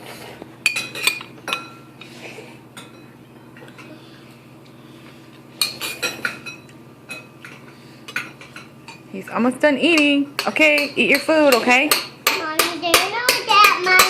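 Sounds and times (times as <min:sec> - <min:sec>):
cutlery clinking against bowls: 0:00.6 - 0:02.1, 0:02.7 - 0:03.9, 0:05.6 - 0:09.1, 0:09.8 - 0:14.0.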